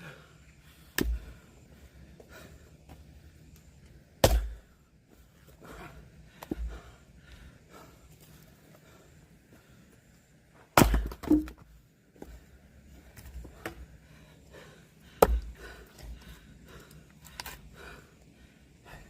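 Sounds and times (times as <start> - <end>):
axe chopping firewood: 1.0 - 1.2, 4.2 - 4.6, 10.7 - 11.6, 15.2 - 15.6.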